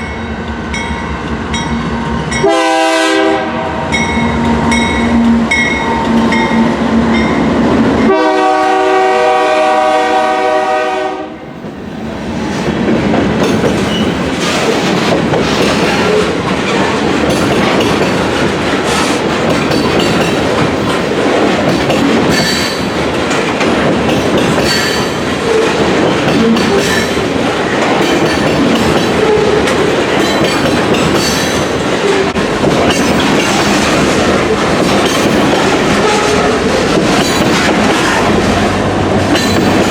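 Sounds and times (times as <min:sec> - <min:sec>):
freight train wheel and rail noise: 0:00.0 - 0:39.9
locomotive air horn chord: 0:02.4 - 0:03.8, 0:08.0 - 0:11.4.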